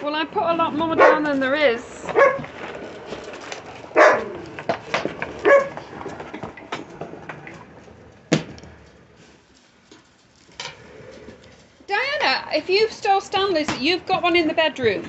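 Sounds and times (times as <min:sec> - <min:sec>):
puppies barking and yipping: 0:00.8 - 0:01.4, 0:02.1 - 0:02.5, 0:03.9 - 0:04.5, 0:05.4 - 0:05.8.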